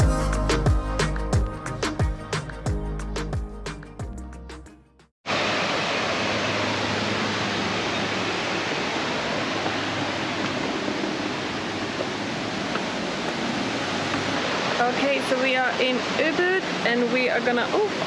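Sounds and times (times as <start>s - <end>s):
background music: 0.0s - 5.1s.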